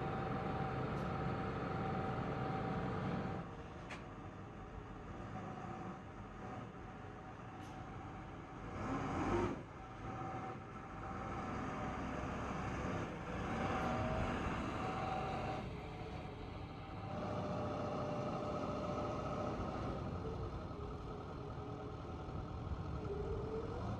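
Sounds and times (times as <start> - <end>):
diesel forklift engine running: 9.7 - 23.9.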